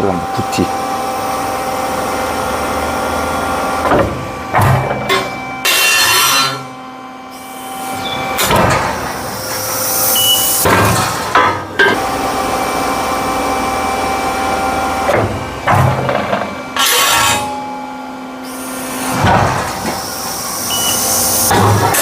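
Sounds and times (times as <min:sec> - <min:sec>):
machine cutting steel: 0:00.0 - 0:22.0
sharp metal clanks: 0:04.5 - 0:06.7, 0:16.8 - 0:17.9.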